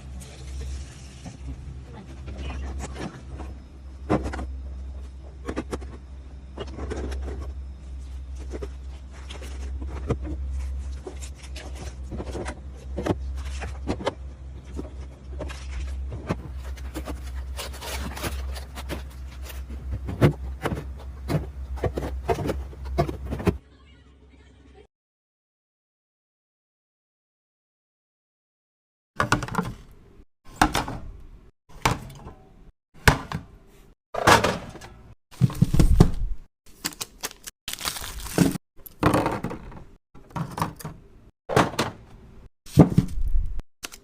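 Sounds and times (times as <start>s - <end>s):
steady low hum: 1.4s - 23.6s
items clicking and knocking: 11.1s - 23.6s, 29.2s - 31.1s, 38.1s - 44.0s.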